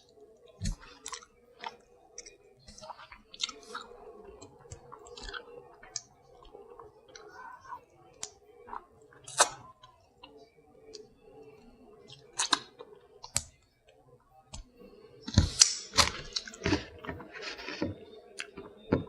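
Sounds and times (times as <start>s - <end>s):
mouth clicks and smacks chewing: 0.5s - 7.3s, 12.0s - 13.5s.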